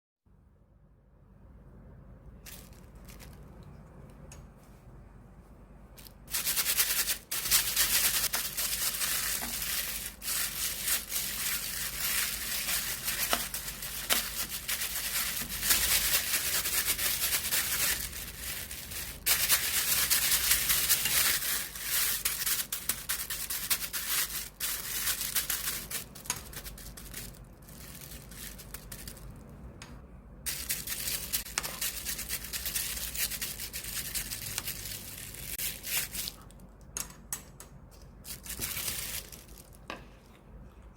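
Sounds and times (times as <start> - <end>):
slime crinkling and crackling: 6.0 - 29.5, 38.0 - 39.9.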